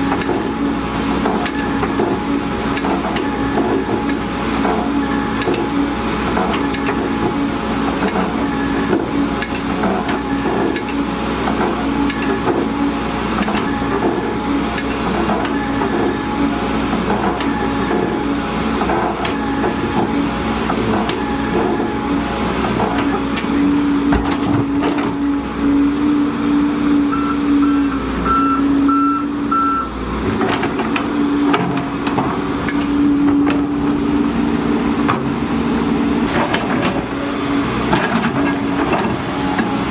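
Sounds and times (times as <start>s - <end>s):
excavator diesel engine running: 0.0s - 39.9s
warning alarm beeping: 27.0s - 30.0s.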